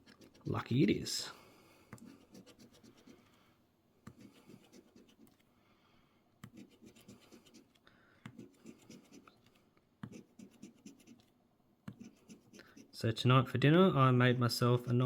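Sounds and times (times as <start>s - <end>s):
coin scratching lottery ticket: 0.0s - 0.6s.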